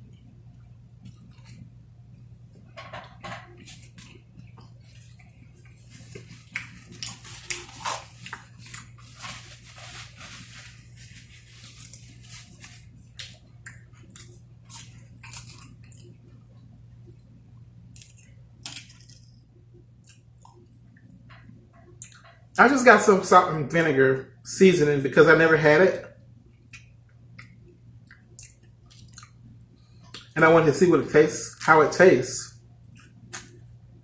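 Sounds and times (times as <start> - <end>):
steady low hum: 0.0 - 34.0
person chewing food: 3.6 - 10.1, 11.1 - 16.4, 26.6 - 30.3.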